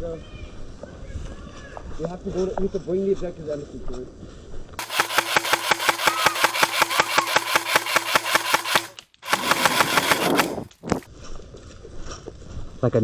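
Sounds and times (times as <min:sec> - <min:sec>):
airsoft gun firing full-auto: 0:04.8 - 0:11.1
gearbox motor whine: 0:04.8 - 0:11.1.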